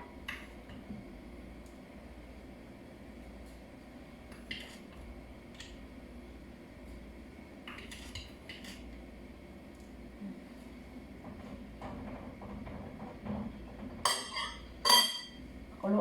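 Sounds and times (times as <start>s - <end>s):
metal spoon clinking against pot: 14.1s - 15.4s.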